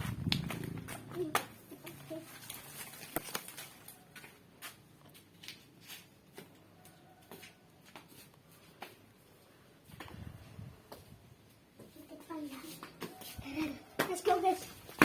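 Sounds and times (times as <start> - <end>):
footsteps in sandals: 0.0 - 10.2.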